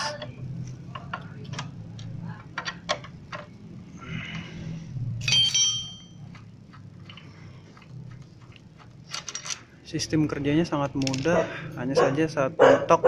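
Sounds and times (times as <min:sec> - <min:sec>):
low steady hum: 0:00.0 - 0:12.8
ringing metallic clink: 0:05.2 - 0:06.2.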